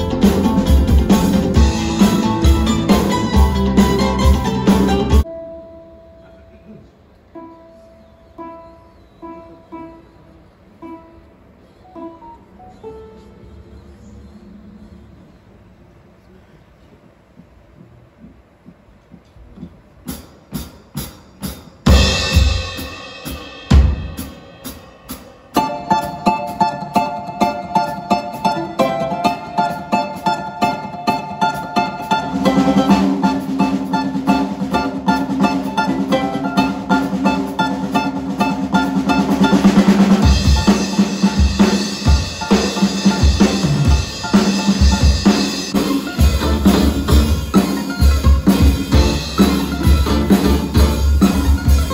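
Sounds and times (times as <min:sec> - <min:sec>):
drum kit and bass beat: 0:00.0 - 0:05.2, 0:18.2 - 0:51.9
plucked string notes: 0:00.0 - 0:06.6, 0:21.9 - 0:51.9
drum kit ticks: 0:17.2 - 0:20.2
cymbal crash: 0:21.9 - 0:26.8.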